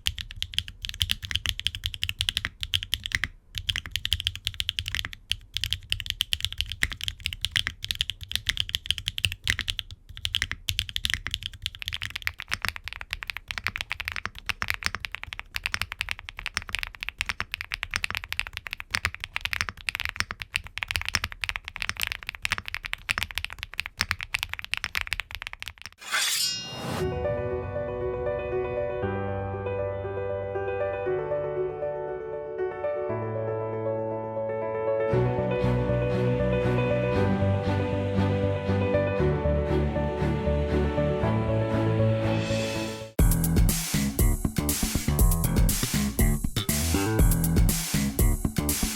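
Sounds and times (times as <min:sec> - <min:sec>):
mechanical keyboard typing: 0:00.0 - 0:26.0.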